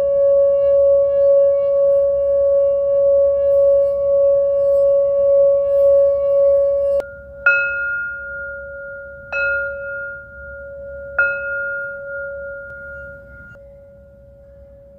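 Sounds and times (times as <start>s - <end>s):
low hum: 0.0s - 14.9s
singing bowl struck: 0.0s - 14.9s
singing bowls ringing: 0.0s - 14.9s.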